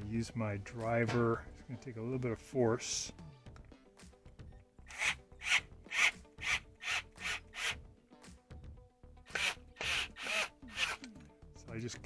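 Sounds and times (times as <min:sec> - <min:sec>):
screw rasping into sheet metal: 0:04.9 - 0:07.8, 0:09.3 - 0:11.1.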